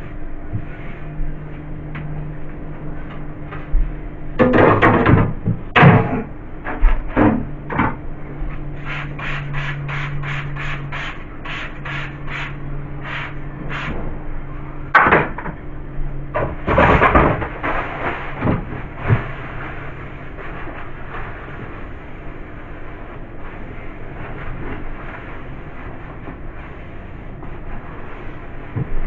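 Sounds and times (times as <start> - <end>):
low hum: 0.0 - 29.0
knocks and clatter of containers: 4.4 - 8.0, 16.4 - 19.3
quick scrubbing strokes: 8.8 - 13.9.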